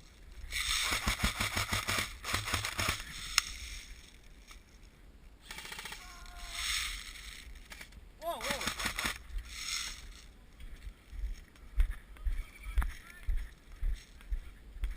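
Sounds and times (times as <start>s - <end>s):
airsoft guns firing bursts: 0.5s - 3.2s, 5.4s - 7.0s, 7.7s - 9.9s.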